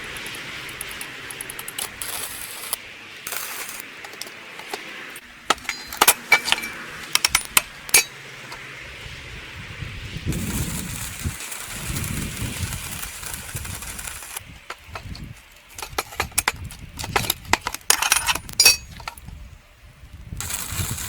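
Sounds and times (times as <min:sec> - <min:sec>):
steady hiss: 0:00.0 - 0:08.5, 0:10.2 - 0:19.3, 0:20.4 - 0:21.0
metal pieces clinking: 0:00.2 - 0:04.9, 0:05.5 - 0:08.1, 0:13.5 - 0:19.3.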